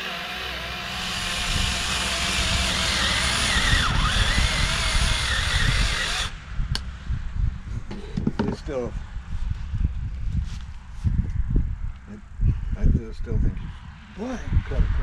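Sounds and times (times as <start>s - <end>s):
small chainsaw cutting: 0.0s - 6.4s.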